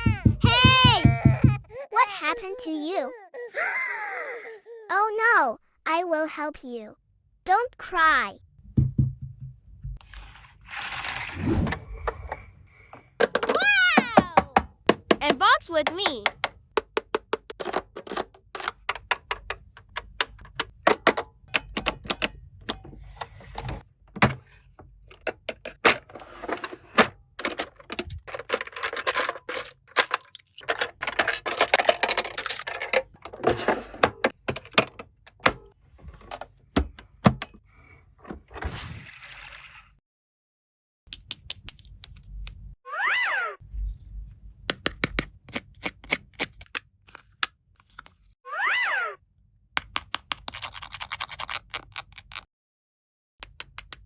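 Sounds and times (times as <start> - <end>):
plastic toy pieces clicking: 13.2 - 22.3, 27.4 - 33.2, 41.1 - 42.3, 49.8 - 52.5, 53.4 - 54.0.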